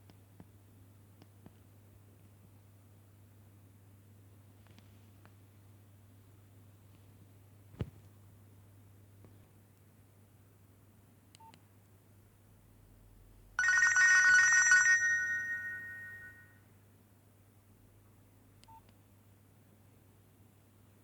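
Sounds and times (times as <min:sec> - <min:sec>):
electronic phone ringtone: 0:13.6 - 0:16.5.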